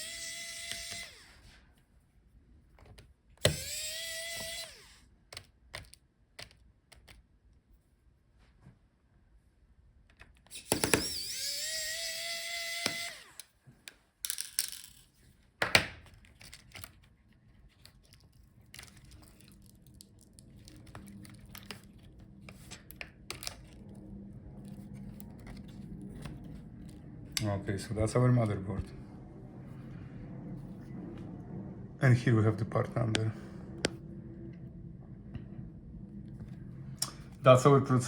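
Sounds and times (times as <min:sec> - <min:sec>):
electric screwdriver whining: 0:00.0 - 0:01.5, 0:03.4 - 0:05.1, 0:10.5 - 0:13.5
small clicks of screws and parts: 0:12.8 - 0:15.1.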